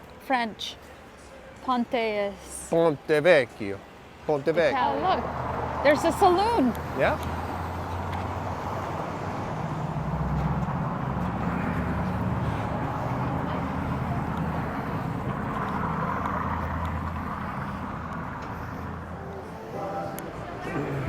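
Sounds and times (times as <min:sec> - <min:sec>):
street noise: 0:00.0 - 0:21.0
vehicle engine hum: 0:05.1 - 0:21.0.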